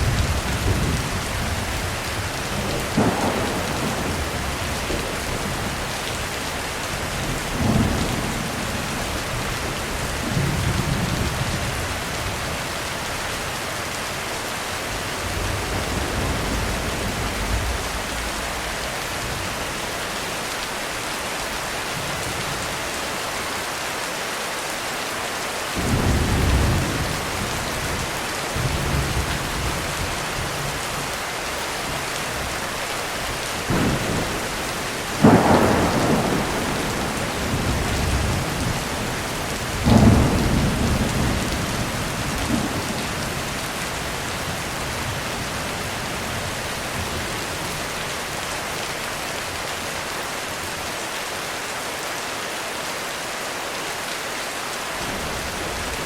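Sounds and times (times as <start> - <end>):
thunder rumbling: 0.0 - 12.7, 14.8 - 20.8, 25.8 - 31.2, 31.8 - 47.9
heavy rain hissing: 0.0 - 56.0.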